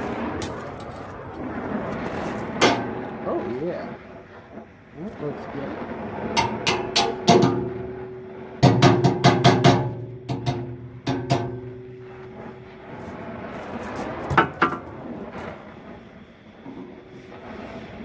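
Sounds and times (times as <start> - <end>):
hammer striking steel: 2.6 - 3.2, 6.4 - 13.2.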